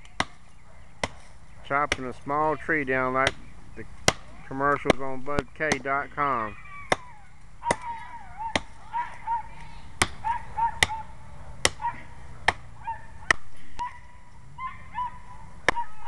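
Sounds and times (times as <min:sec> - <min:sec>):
tomahawk chopping tree trunk: 0:00.0 - 0:02.2, 0:02.8 - 0:06.0, 0:06.8 - 0:09.2, 0:10.0 - 0:13.6, 0:15.6 - 0:16.0.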